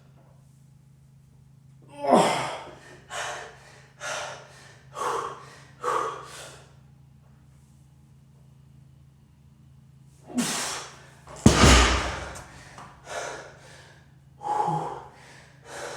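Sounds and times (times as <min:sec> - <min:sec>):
person breathing hard: 0:14.4 - 0:15.9.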